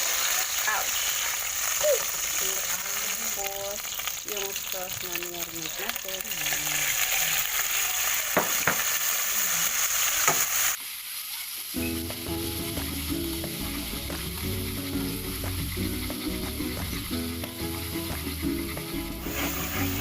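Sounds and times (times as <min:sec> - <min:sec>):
chicken sizzling in a frying pan: 0:00.0 - 0:20.0
background music: 0:11.8 - 0:20.0.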